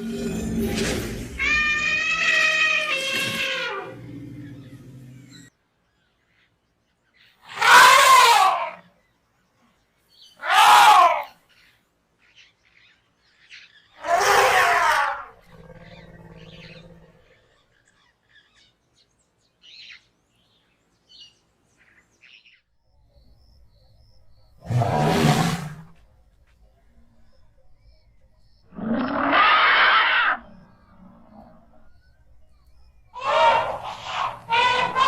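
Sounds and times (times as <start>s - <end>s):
elephants trumpeting: 0.0s - 4.8s, 7.5s - 8.8s, 24.6s - 25.9s, 28.7s - 31.6s, 33.2s - 35.0s.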